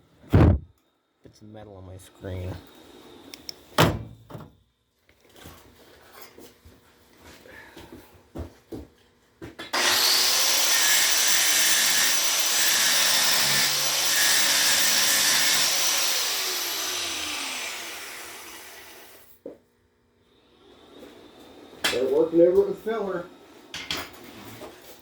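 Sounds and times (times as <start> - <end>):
grinder grinding: 9.7 - 19.4.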